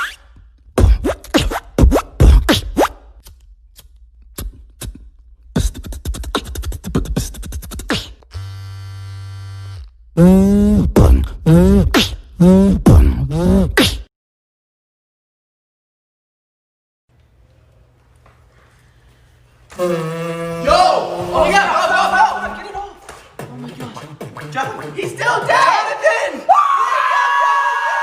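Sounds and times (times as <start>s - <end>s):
buzzing beatbox bass tone: 0.0s - 3.0s, 4.3s - 14.1s, 23.4s - 25.2s
beatboxing drum sounds: 0.0s - 8.3s, 10.2s - 14.1s, 23.3s - 25.7s
swooping beatbox bass notes: 0.0s - 8.3s, 10.2s - 14.1s, 23.4s - 25.5s.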